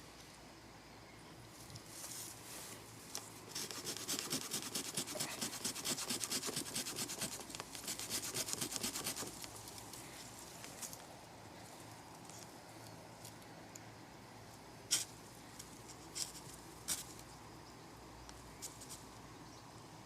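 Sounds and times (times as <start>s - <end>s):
hand saw strokes: 3.5s - 9.3s.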